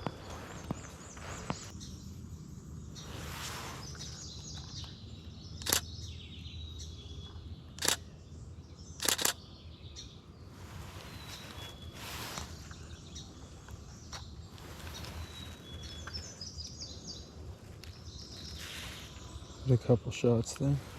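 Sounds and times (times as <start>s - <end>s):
faint bird chirps: 0.0s - 20.9s
camera shutter firing: 5.6s - 5.8s, 7.8s - 8.0s, 9.0s - 9.4s.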